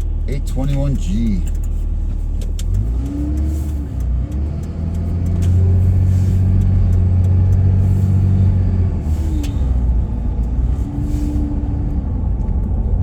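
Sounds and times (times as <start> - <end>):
vehicle engine droning: 0.0 - 13.0
light clicks: 0.6 - 8.4.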